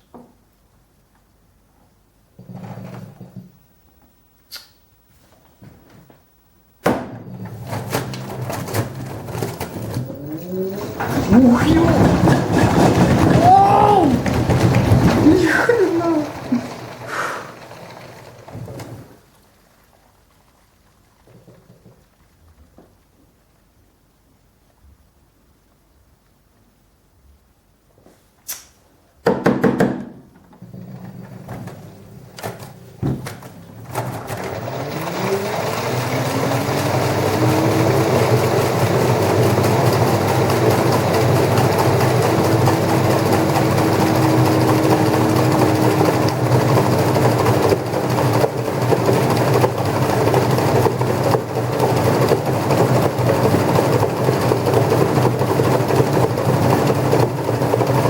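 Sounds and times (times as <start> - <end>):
washing machine drum spinning: 6.8 - 19.4, 30.6 - 58.0
washing machine motor whine: 6.9 - 19.4, 30.6 - 58.0
washing machine clicks and knocks: 29.2 - 30.4.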